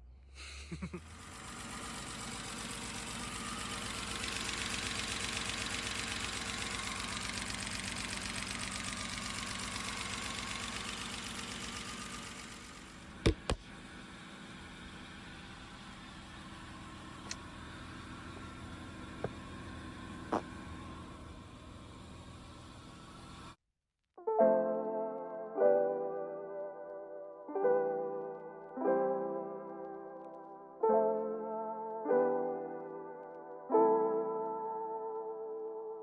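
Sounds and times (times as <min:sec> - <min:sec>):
car engine idling: 0:01.0 - 0:23.6.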